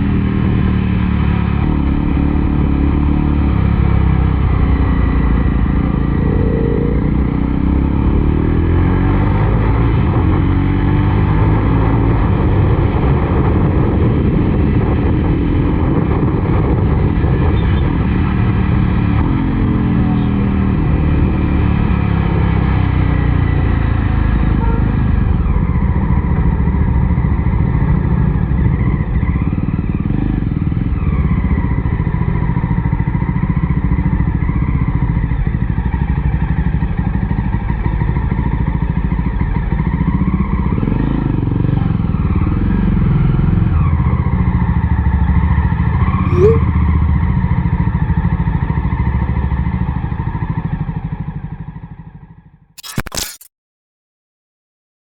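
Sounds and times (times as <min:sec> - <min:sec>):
motorcycle engine running: 0:00.0 - 0:24.8
brief high chirp: 0:46.3 - 0:46.6.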